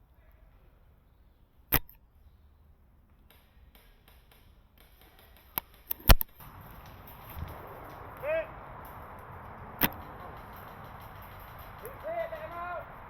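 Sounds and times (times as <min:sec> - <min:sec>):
airsoft rifle snaps and clicks: 0:01.7 - 0:02.0, 0:05.6 - 0:06.4
faint rattling: 0:02.1 - 0:13.0.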